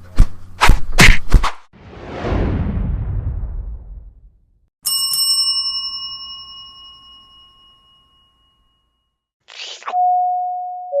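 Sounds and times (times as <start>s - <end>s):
ding-dong chime: 4.8s - 9.3s, 10.0s - 11.0s
small bell ringing: 4.8s - 9.3s.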